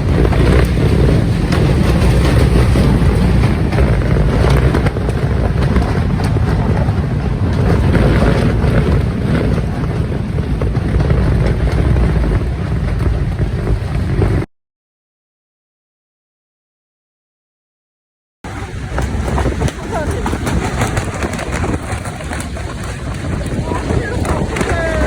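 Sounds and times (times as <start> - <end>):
gale wind buffeting microphone: 0.0 - 14.5, 18.5 - 25.0.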